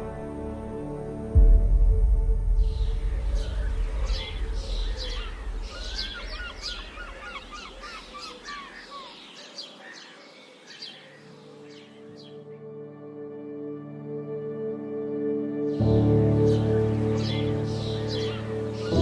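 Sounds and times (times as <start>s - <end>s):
low rumble: 1.4s - 7.2s
birds chirping and singing: 2.6s - 12.8s, 15.7s - 19.0s.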